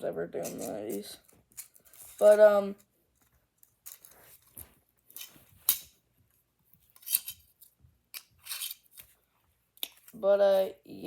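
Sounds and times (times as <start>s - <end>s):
fidget toy clicks and scrapes: 0.4s - 2.9s.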